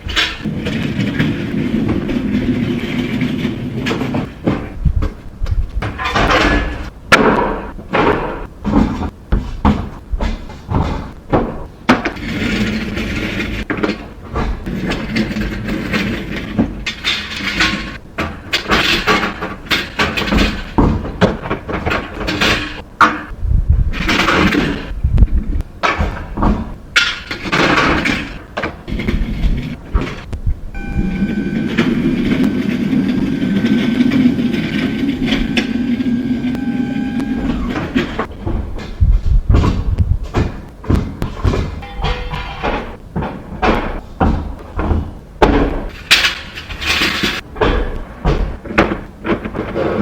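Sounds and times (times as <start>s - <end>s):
equipment clattering and scraping: 0.0s - 5.2s
low hum: 28.9s - 38.3s
machine whine: 28.9s - 38.4s.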